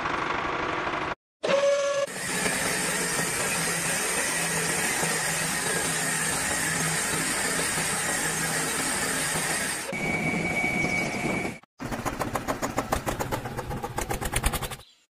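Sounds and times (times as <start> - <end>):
small motor running: 0.3 - 10.0
high whirring whine: 2.1 - 11.6.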